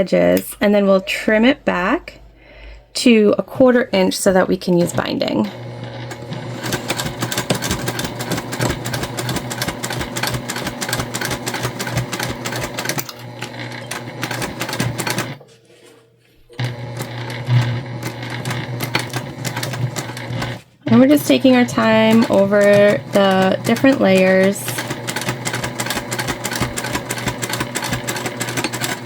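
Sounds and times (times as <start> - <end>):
sewing machine stitching: 4.8 - 15.4, 16.6 - 29.0.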